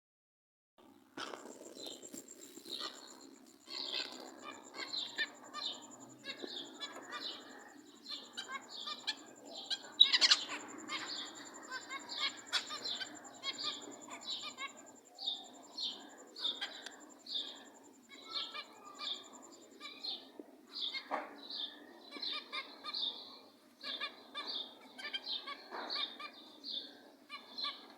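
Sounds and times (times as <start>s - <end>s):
finches calling: 1.2s - 23.1s.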